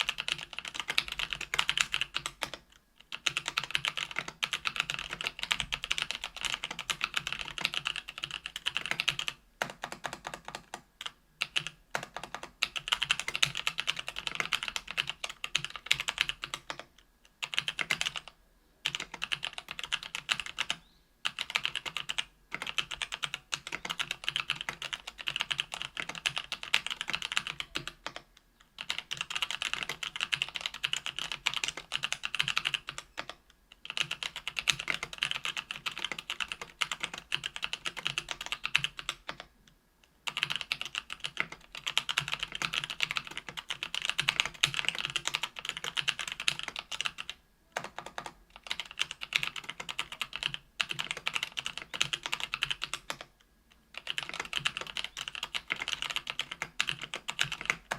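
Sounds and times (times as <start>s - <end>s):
fast typing on mechanical keyboard: 0.0s - 39.5s, 40.2s - 53.3s, 53.9s - 57.9s.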